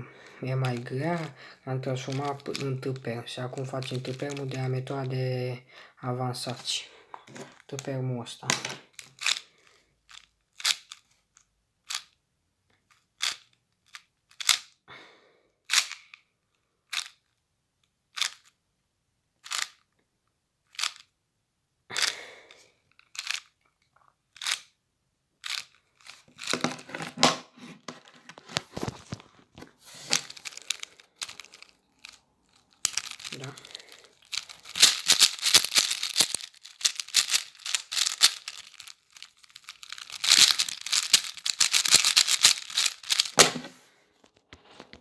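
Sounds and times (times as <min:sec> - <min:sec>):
plastic puzzle cube clicking: 0:00.2 - 0:04.8, 0:06.5 - 0:09.4, 0:10.1 - 0:11.1, 0:12.9 - 0:14.7, 0:15.7 - 0:16.0, 0:18.2 - 0:18.5, 0:19.5 - 0:19.8, 0:20.8 - 0:21.1, 0:23.1 - 0:23.5, 0:24.4 - 0:24.7, 0:25.4 - 0:43.8.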